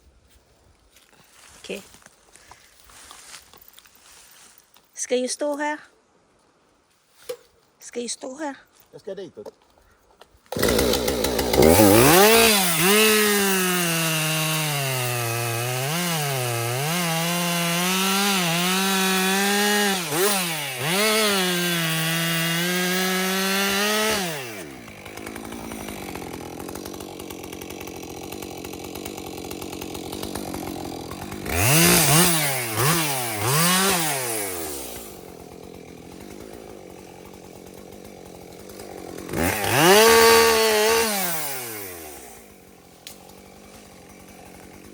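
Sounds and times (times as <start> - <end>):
chainsaw revving and idling: 10.5 - 44.9.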